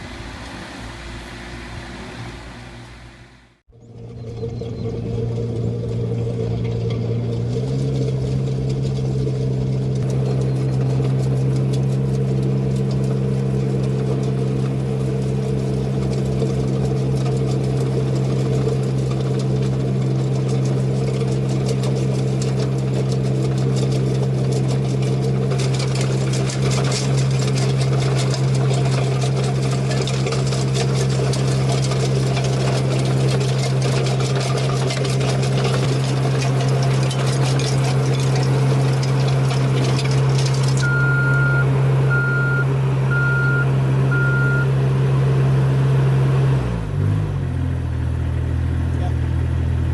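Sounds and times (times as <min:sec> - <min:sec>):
small construction machine engine: 0:00.0 - 0:49.9
machine clatter: 0:04.0 - 0:41.0.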